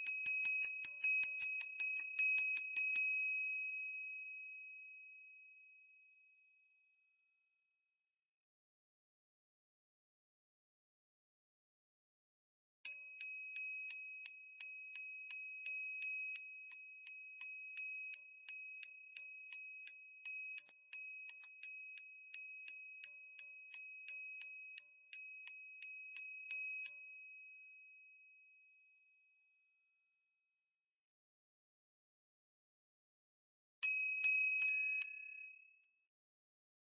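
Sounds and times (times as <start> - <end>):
small brass bell ringing: 33.8 - 35.8.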